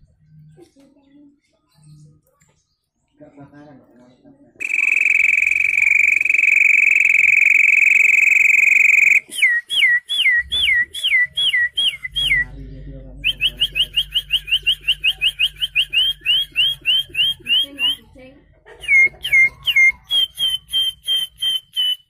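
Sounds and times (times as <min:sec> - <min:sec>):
man whistling birdsong: 0:04.6 - 0:12.6, 0:13.2 - 0:18.0, 0:18.9 - 0:22.0.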